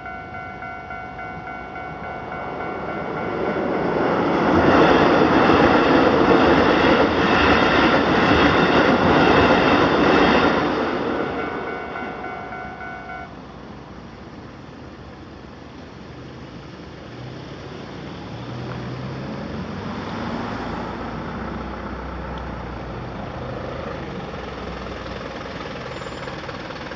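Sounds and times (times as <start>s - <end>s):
steady high tone: 0.0s - 13.5s
train passing: 0.0s - 18.4s
road vehicle engines humming: 0.0s - 26.9s.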